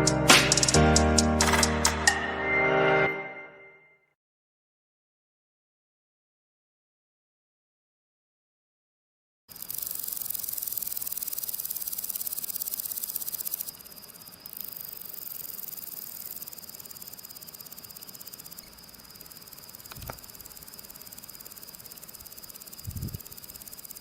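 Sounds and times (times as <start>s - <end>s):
grasshopper stridulating: 9.5s - 24.0s.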